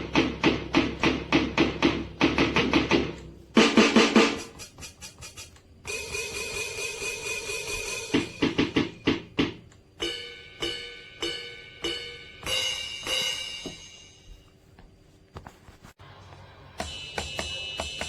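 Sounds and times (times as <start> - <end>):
electronic tom hits: 0.0 - 4.6, 5.9 - 14.2, 16.8 - 18.0
electronic cymbal crash: 5.9 - 9.1, 10.0 - 14.3, 16.0 - 18.0
ringing drum hits: 5.9 - 14.4, 16.8 - 18.0.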